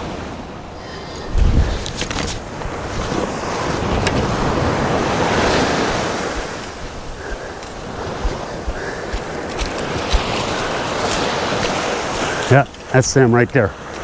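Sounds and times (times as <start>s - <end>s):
wind buffeting microphone: 0.0s - 12.9s
surf washing onto beach: 0.0s - 14.0s.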